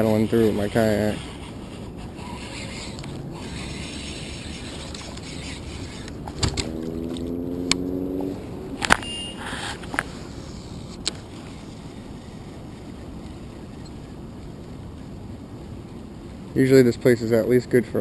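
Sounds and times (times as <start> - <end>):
fishing reel whirring: 0.0 - 6.3
wind and water hiss: 0.0 - 18.0.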